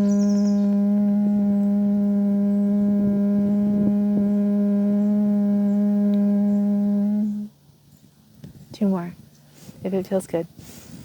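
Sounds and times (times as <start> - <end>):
woman humming a low note: 0.0 - 7.5.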